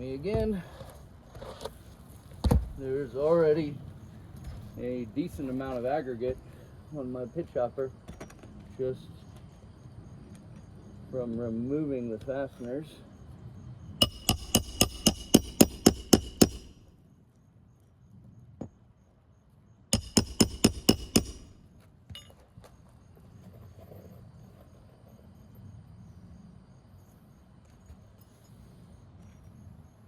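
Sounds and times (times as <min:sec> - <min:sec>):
hammer striking nails: 0:14.0 - 0:16.9, 0:20.0 - 0:21.6.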